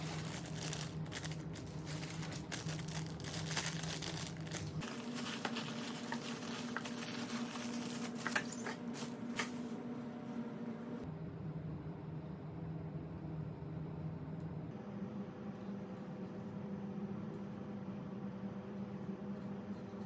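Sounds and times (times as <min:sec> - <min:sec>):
packaging crinkling: 0:00.0 - 0:09.8
steady low hum: 0:00.0 - 0:20.0.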